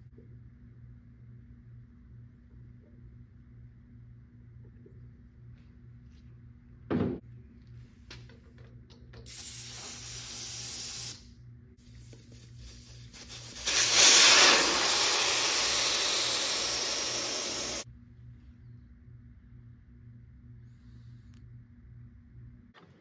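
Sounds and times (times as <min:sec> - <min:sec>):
pressurised spray hissing: 0:12.6 - 0:17.8.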